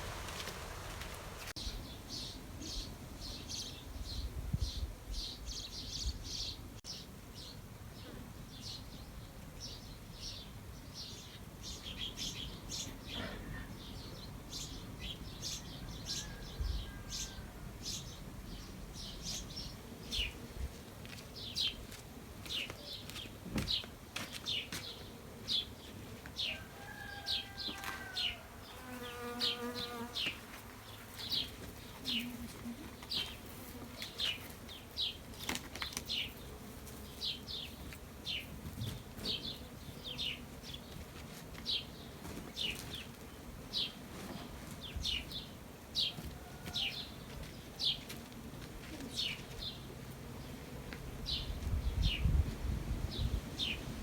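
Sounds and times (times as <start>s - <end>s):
small birds chirping: 1.4s - 48.1s.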